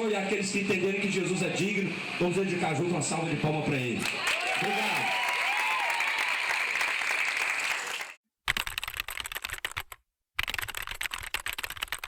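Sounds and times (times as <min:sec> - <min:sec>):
crowd applauding: 0:00.1 - 0:08.2.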